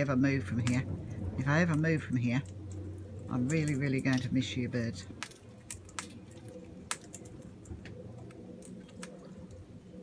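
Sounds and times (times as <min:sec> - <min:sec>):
faint steady hum: 0:00.0 - 0:10.0
parrot beaks clicking: 0:05.2 - 0:09.6.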